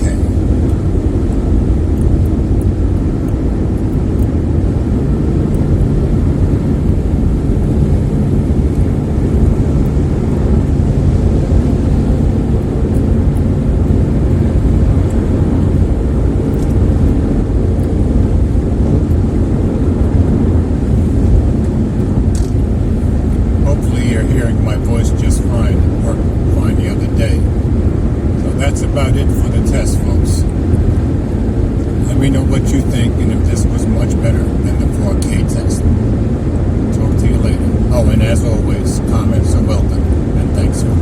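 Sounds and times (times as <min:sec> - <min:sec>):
car driving on wet road: 0:00.0 - 0:41.0.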